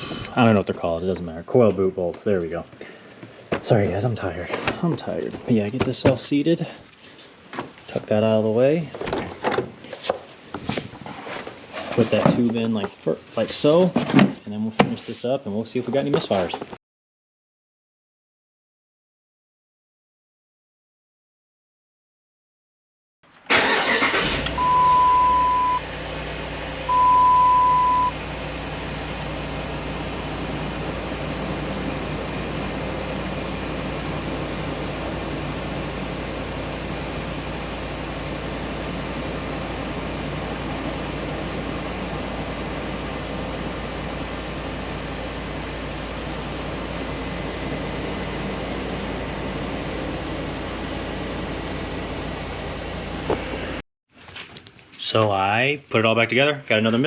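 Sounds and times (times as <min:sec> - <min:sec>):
loud beeps: 0:24.6 - 0:25.9, 0:26.9 - 0:28.2
misfiring engine running: 0:28.0 - 0:53.8.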